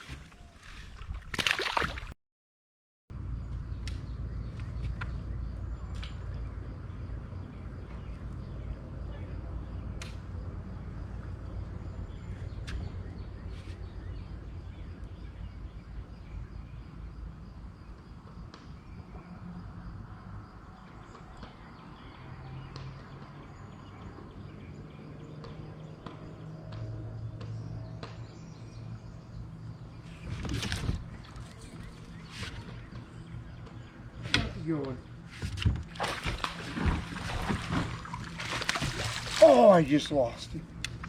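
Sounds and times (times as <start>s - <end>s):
wind rumble on microphone: 27.8s - 39.4s.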